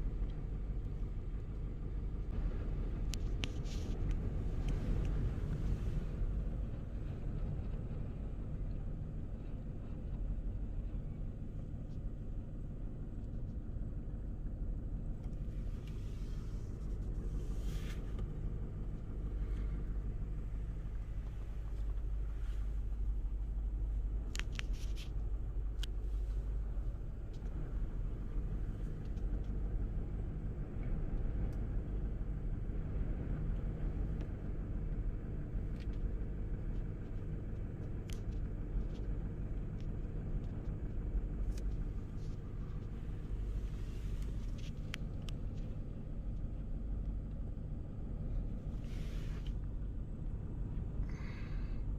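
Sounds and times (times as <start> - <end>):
strong wind buffeting microphone: 2.3 - 11.2.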